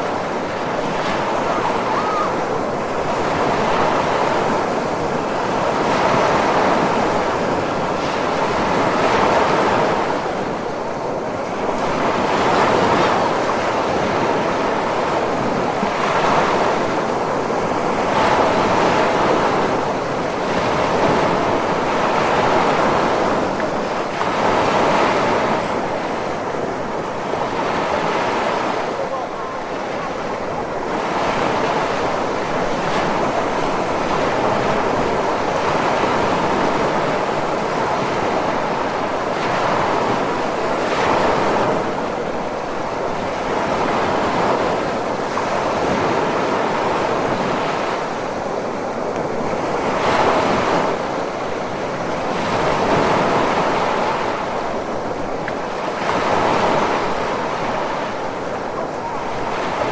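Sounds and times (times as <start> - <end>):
ocean waves rushing: 0.0 - 59.9.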